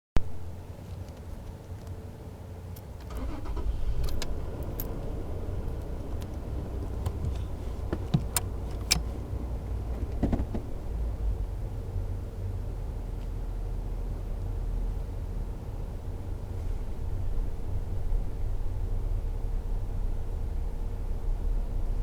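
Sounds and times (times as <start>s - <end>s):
truck engine rumbling: 2.8s - 13.0s.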